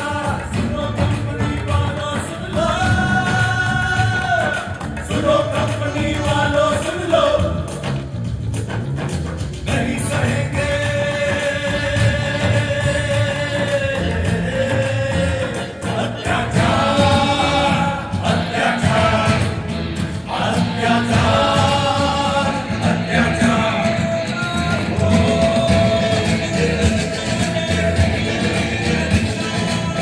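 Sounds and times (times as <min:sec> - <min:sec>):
choir singing held notes: 0:09.7 - 0:30.0.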